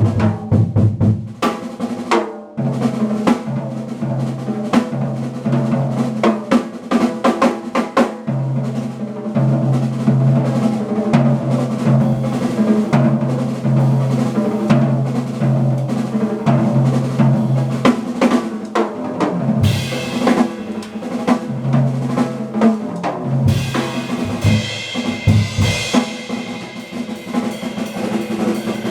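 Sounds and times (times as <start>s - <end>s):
snare and bass drum strokes: 0.0s - 28.9s
jazz combo playing: 9.6s - 28.9s
held bass notes: 11.8s - 18.2s, 23.3s - 26.0s
bright cymbal sound: 11.8s - 18.8s, 19.6s - 28.9s.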